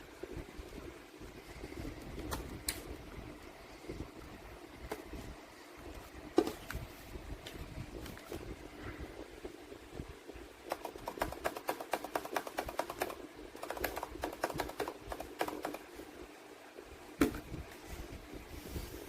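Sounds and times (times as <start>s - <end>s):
mechanical keyboard typing: 10.7s - 15.9s.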